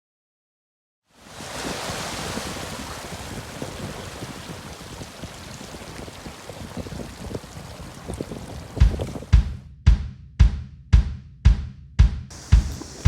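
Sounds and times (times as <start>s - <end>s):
surf rushing: 1.2s - 9.4s, 12.3s - 13.0s
wind rumble on microphone: 1.3s - 9.6s, 12.3s - 13.0s.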